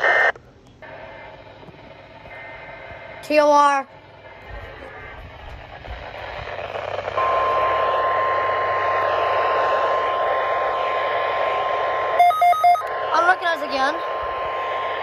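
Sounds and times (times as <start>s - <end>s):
radio static: 0.0s - 15.0s
emergency alert tone: 6.7s - 15.0s.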